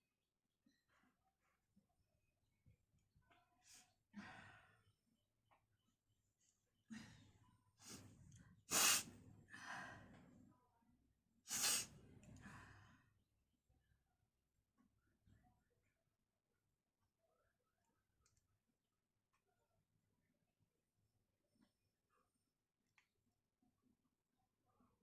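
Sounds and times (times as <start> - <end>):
woman gasping inhalations: 8.7 - 10.2, 11.5 - 13.0.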